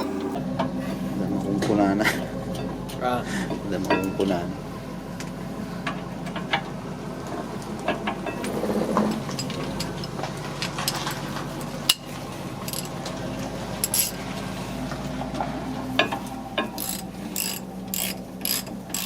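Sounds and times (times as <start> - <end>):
steady low hum: 0.0 - 19.0
ratchet wrench clicking: 12.7 - 12.9, 13.8 - 14.2, 16.6 - 19.0.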